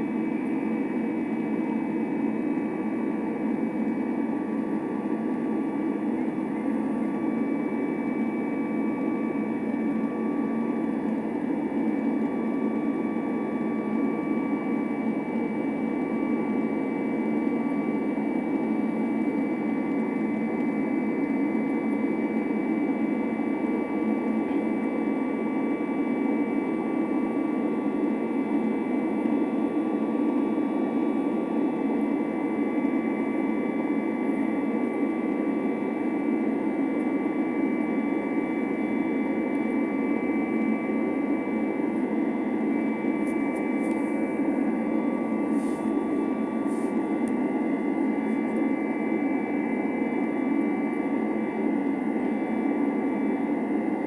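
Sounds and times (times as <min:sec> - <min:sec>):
jet engines running: 0:40.2 - 0:53.5.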